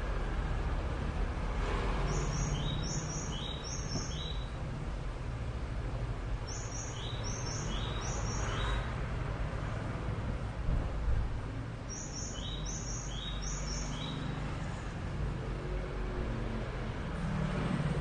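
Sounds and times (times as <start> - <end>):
bird chirping: 2.0 - 4.6, 6.5 - 8.9, 11.9 - 14.4.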